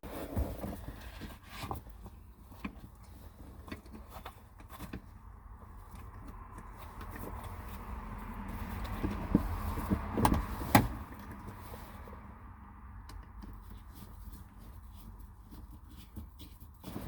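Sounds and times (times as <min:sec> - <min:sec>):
handling clicks and knocks: 0:08.6 - 0:11.6, 0:13.0 - 0:17.0.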